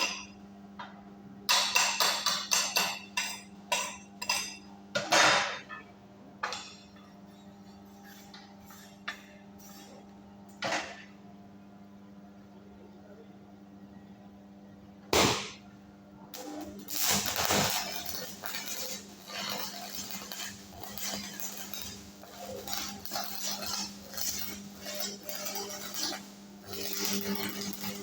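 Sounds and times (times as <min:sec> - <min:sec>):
welding machine hum: 0:06.4 - 0:11.3, 0:16.3 - 0:28.0
welding arc crackling: 0:16.4 - 0:28.0.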